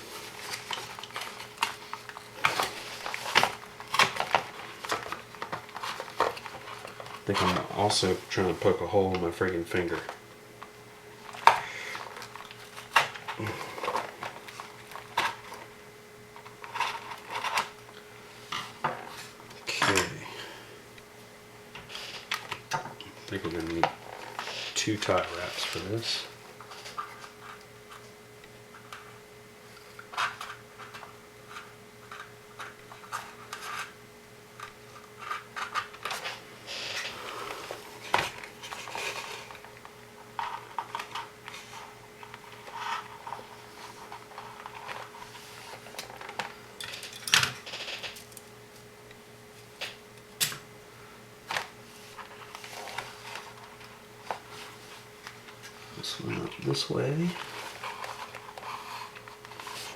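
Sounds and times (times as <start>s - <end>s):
faint steady hum: 0.0s - 59.9s.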